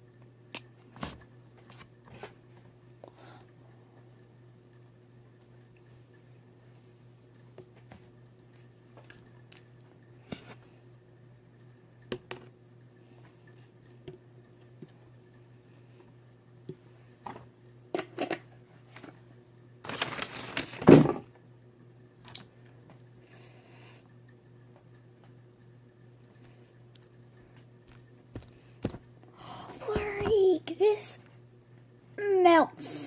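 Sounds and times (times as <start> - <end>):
faint steady hum: 0.0 - 33.0
light taps and clicks of containers: 24.3 - 29.2.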